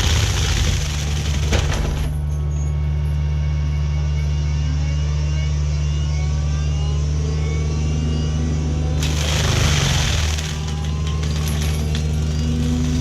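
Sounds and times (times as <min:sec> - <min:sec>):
harsh grinding noise: 0:00.0 - 0:02.0, 0:09.0 - 0:13.0
diesel engine running under load: 0:00.0 - 0:13.0
faint wavering whines: 0:02.1 - 0:09.0.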